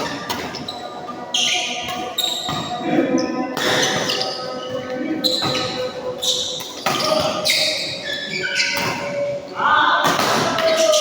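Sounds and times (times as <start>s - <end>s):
shoes squeaking on court floor: 0.0s - 9.6s, 10.4s - 11.0s
short high-pitched squeaks: 5.2s - 9.3s
rackets striking shuttlecock: 10.0s - 11.0s.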